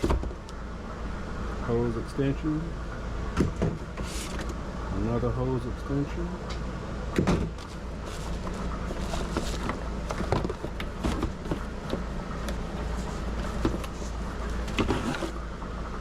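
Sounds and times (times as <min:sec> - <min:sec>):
low steady hum: 0:00.0 - 0:16.0
cardboard box rustling: 0:07.5 - 0:15.4
scrapes and light knocks: 0:07.6 - 0:15.4.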